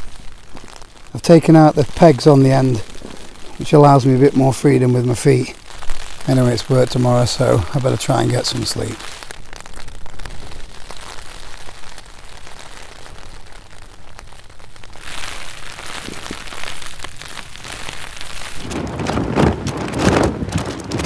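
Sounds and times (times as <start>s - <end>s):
rain on a tarp: 0.0s - 21.0s
wind gust on microphone: 18.4s - 21.0s.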